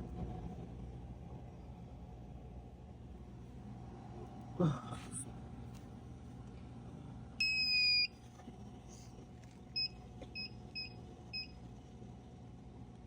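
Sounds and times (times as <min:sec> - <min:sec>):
steady low hum: 0:00.0 - 0:13.0
vending machine keypad beeping: 0:07.4 - 0:08.1, 0:09.8 - 0:11.5.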